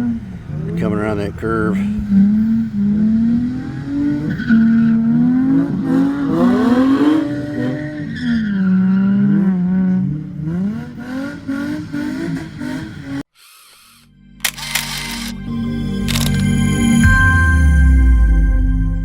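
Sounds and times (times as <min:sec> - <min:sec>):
car engines revving hard: 0:00.0 - 0:13.3.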